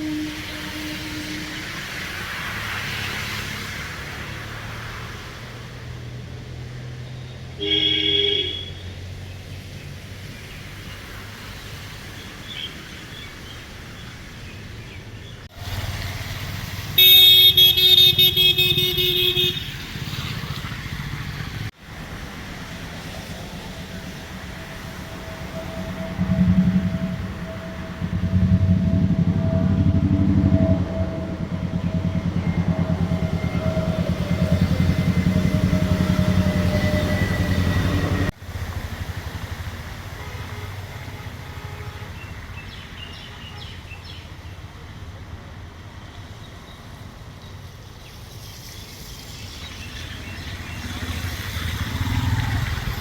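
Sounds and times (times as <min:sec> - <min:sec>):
vehicle horns honking: 0:00.0 - 0:02.5, 0:07.6 - 0:08.9, 0:16.8 - 0:20.2, 0:24.6 - 0:38.3, 0:40.1 - 0:42.5
road traffic engines: 0:00.0 - 0:53.0.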